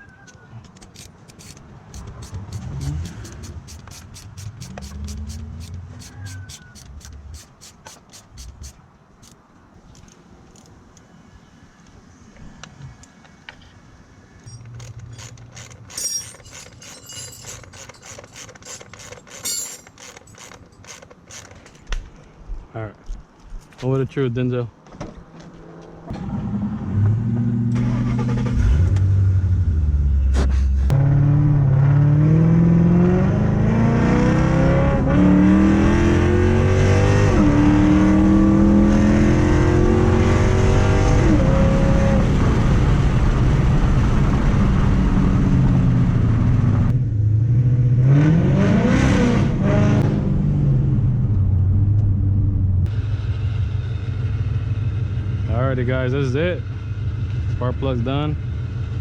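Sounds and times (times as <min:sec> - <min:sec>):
loud car engine revving: 0:01.9 - 0:07.4, 0:30.9 - 0:51.1.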